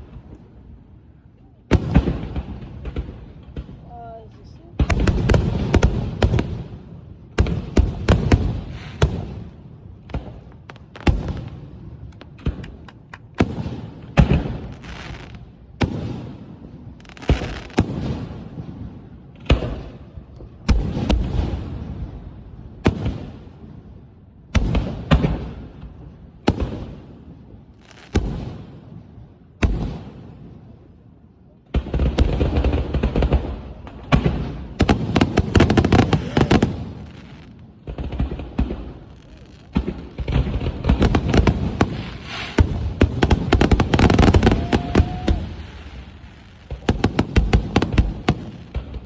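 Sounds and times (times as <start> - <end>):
fireworks bangs: 4.7 - 19.9, 31.7 - 49.0.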